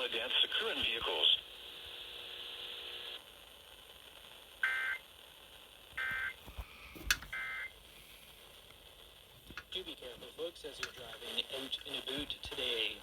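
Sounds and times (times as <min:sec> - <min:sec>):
radio hiss: 0:00.0 - 0:03.2, 0:06.4 - 0:13.0.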